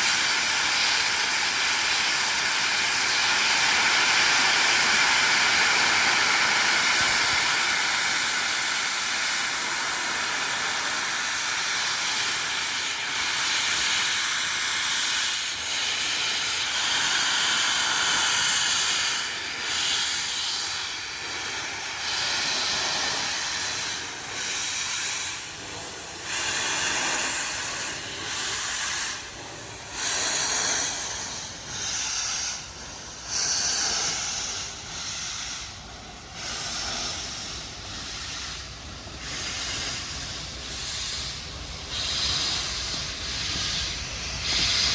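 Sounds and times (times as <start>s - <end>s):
steam locomotive hissing: 0.0s - 44.9s.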